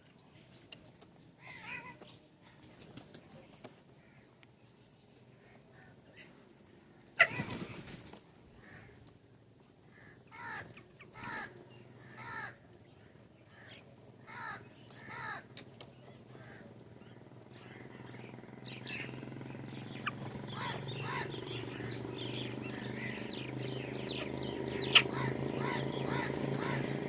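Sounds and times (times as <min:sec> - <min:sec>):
birds calling: 0:00.5 - 0:27.0
faint bird chirps: 0:09.8 - 0:27.0.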